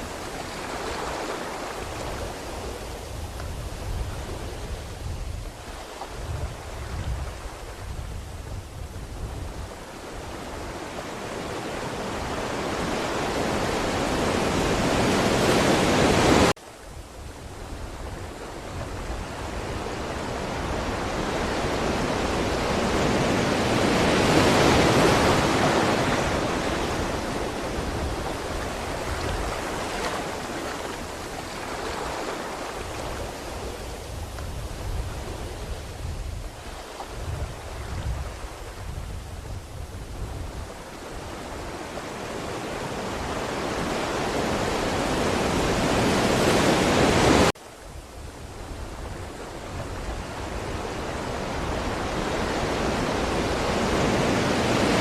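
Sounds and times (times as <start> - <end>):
ocean waves washing up: 0.0 - 55.0.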